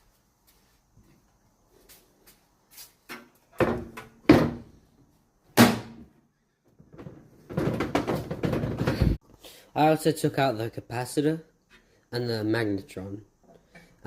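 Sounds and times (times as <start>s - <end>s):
parts clattering and rattling: 6.7s - 9.2s.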